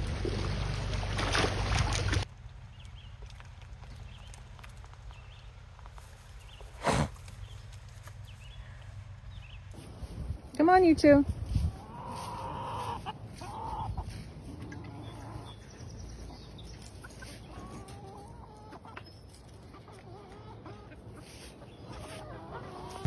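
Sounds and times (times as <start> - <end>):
chickens clucking: 11.4 - 23.0.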